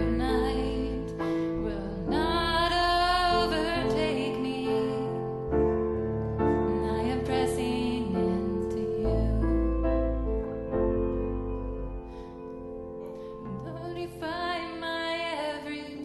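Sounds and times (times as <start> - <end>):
sustained keyboard chords: 0.0 - 16.0.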